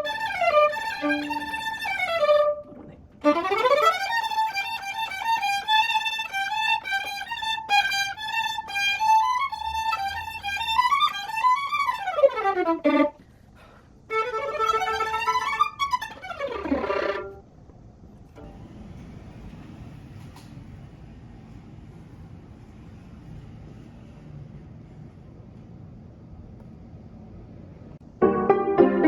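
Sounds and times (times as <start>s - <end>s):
solo violin playing fast runs: 0.0s - 13.2s, 14.1s - 17.4s.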